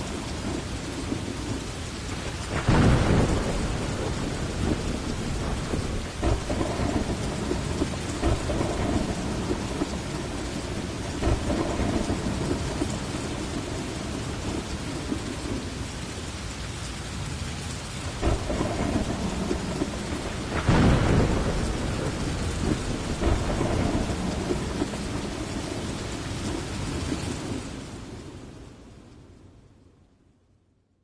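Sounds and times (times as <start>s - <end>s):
heavy rain falling: 0.0s - 29.6s
thunder cracks: 2.2s - 15.7s, 18.1s - 27.7s.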